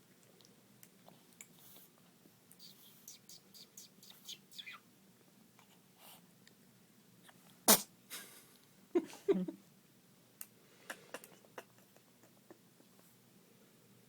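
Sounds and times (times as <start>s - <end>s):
person sneezing: 7.7s - 8.3s.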